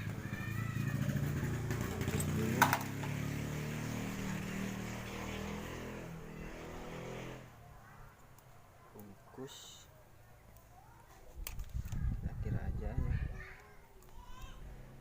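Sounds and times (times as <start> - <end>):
vehicle engine running: 0.0 - 7.5.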